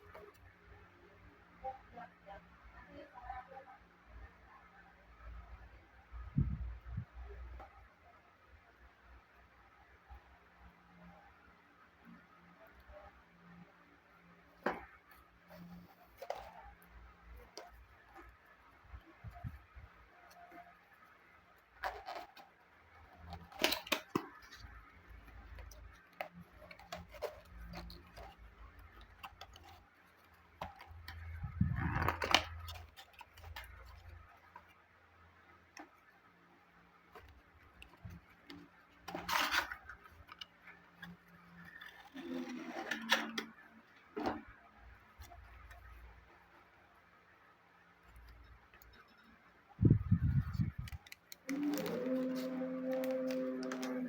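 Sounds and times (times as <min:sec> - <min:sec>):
packaging rustling: 0:50.4 - 0:54.0.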